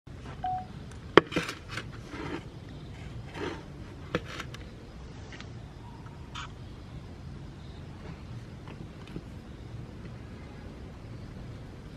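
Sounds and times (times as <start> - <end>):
short scraping noises: 1.3 - 4.6.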